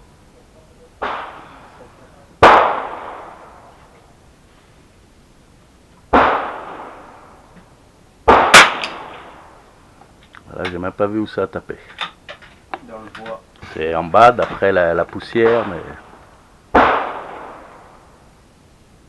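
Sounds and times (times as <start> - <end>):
gunshots with echo: 1.0 - 3.7, 6.1 - 7.2, 8.3 - 9.4, 13.6 - 18.0.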